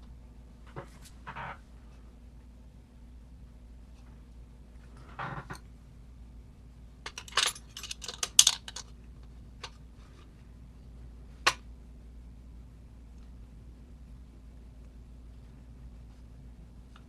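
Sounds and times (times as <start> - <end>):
metal lock parts clicking: 7.1 - 8.9.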